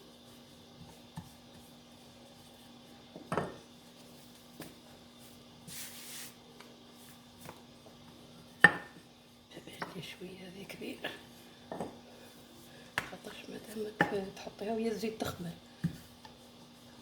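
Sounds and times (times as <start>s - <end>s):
taps on a counter: 3.2s - 3.6s, 8.6s - 8.9s, 11.7s - 12.0s.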